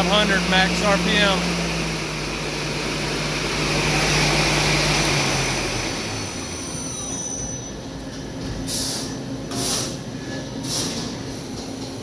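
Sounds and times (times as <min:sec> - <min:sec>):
lathe spindle hissing and whining: 0:00.0 - 0:09.2
machine hum: 0:00.0 - 0:10.3
short sharp hiss: 0:08.7 - 0:10.0.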